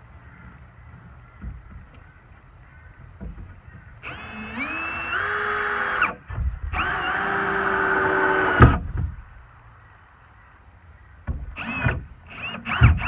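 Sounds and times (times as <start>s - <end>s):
cordless drill motor whine: 4.0s - 8.9s, 11.6s - 13.0s.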